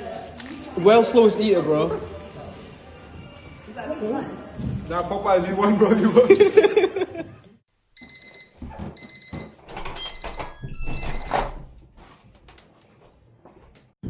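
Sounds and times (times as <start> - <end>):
high-pitched alarm beeps: 8.0 - 11.7.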